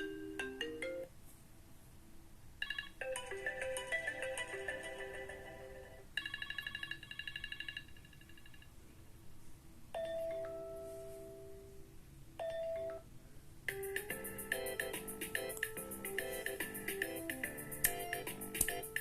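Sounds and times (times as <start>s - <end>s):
ringtone melody: 0.0s - 1.1s, 2.6s - 8.1s, 10.0s - 11.7s, 12.4s - 13.0s, 13.7s - 19.0s
chime-like ringtone: 2.6s - 5.3s, 6.2s - 8.6s.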